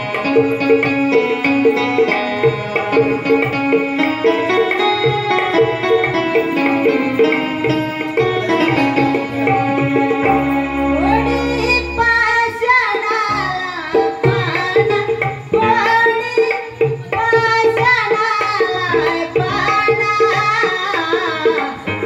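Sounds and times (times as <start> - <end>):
person singing: 0.0 - 16.8
tabla: 0.0 - 22.0
held drone note: 5.6 - 12.7.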